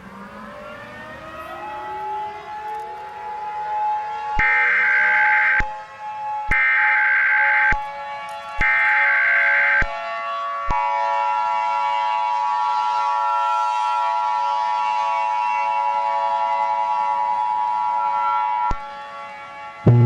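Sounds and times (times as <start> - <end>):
steady electronic alarm tone: 4.4 - 8.0, 8.6 - 10.6, 19.7 - 20.0.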